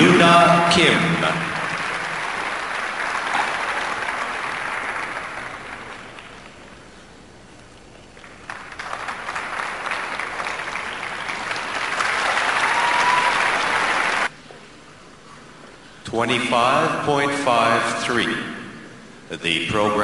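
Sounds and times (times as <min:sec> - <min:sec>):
audience applauding: 0:01.1 - 0:07.0, 0:07.6 - 0:14.3.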